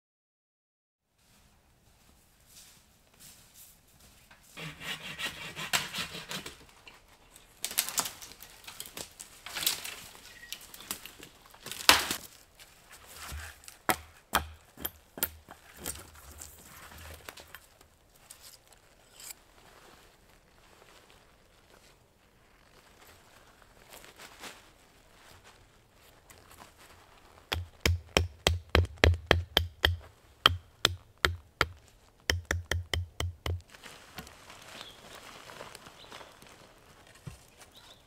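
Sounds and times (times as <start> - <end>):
wood scraping: 13.1 - 17.7, 18.3 - 19.4, 27.4 - 34.4
wooden knocks and cracks: 27.5 - 33.6.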